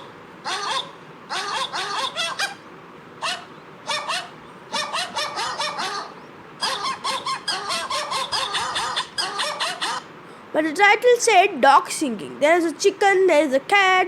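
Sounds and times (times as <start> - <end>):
sampled animal calls ringtone: 0.0 - 2.6, 3.2 - 10.1.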